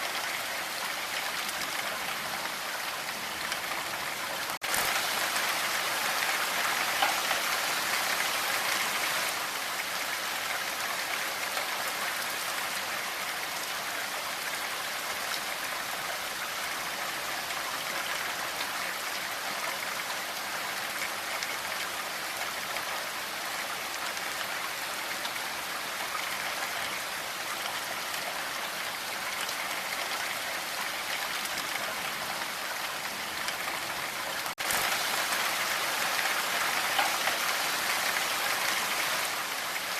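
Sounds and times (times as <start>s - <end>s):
steady rain falling: 0.0s - 39.9s.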